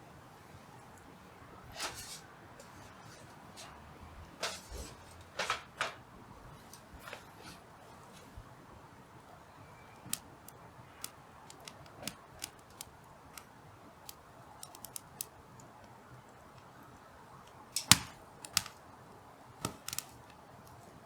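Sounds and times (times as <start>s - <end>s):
firewood crackling: 9.8s - 21.0s
sharp pops: 17.8s - 18.8s, 19.6s - 20.3s.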